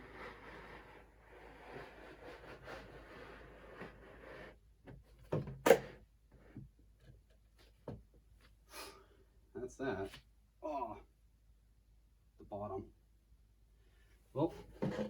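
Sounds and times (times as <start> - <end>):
tube sliding with scraping rub: 0.0 - 5.0, 14.6 - 15.0.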